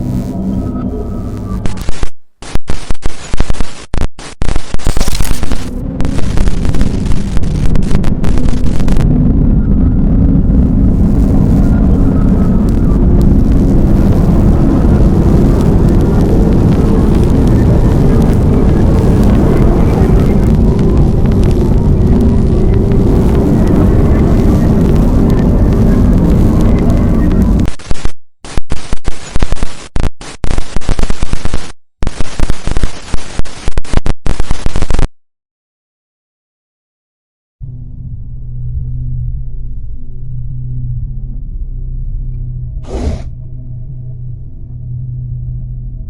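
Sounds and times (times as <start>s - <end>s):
loud steady low rumble: 0.0s - 34.1s, 37.6s - 46.0s
rapid loud cracks: 1.7s - 9.1s, 13.2s - 35.1s.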